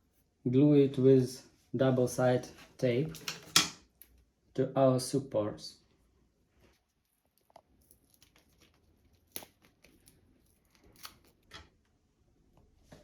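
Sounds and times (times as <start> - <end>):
tape rustling and snipping: 3.1 - 4.2, 7.3 - 11.8.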